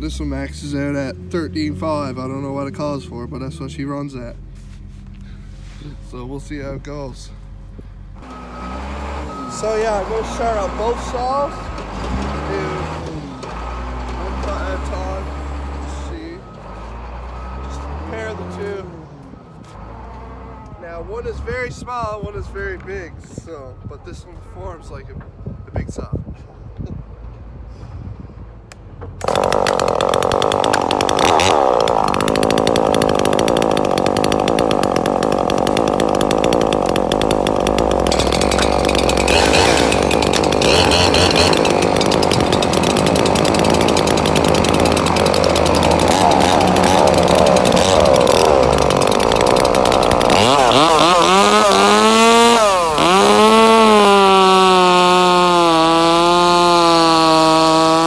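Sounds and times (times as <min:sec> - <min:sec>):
chainsaw engine running hard: 0:08.2 - 0:18.9, 0:29.2 - 0:58.0.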